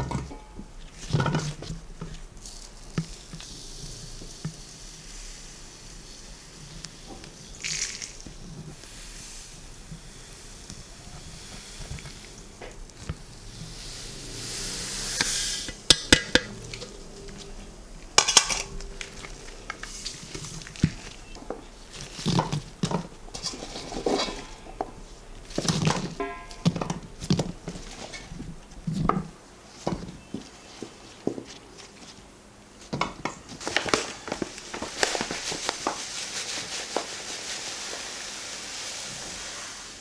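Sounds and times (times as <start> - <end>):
dishes and utensils clinking: 0.0 - 2.2, 15.7 - 28.6
rushing hiss: 2.8 - 21.8, 34.0 - 40.0
knocks and rustles: 15.7 - 37.2.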